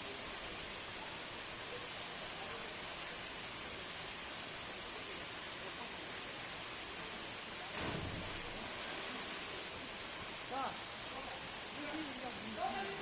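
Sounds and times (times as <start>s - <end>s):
low thump: 7.8s - 8.5s.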